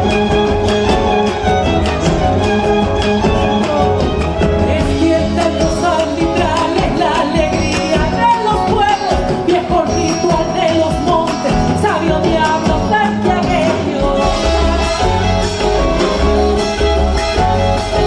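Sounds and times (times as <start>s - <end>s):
folk music playing: 0.0s - 18.0s.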